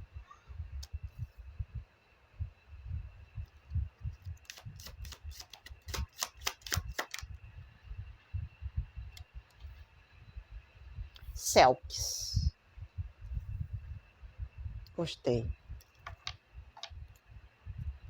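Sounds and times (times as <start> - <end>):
cards being shuffled: 4.4 - 7.3.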